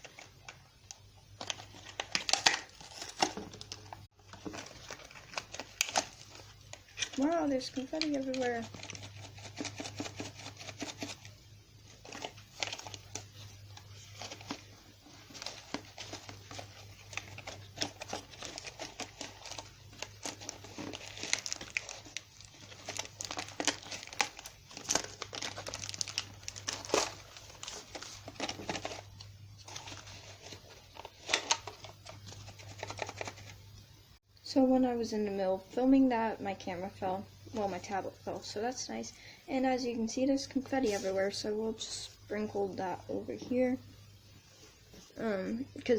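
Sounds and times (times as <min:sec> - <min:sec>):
plastic packaging crinkling and tearing: 0:00.0 - 0:33.6
faint low hum: 0:00.0 - 0:45.9.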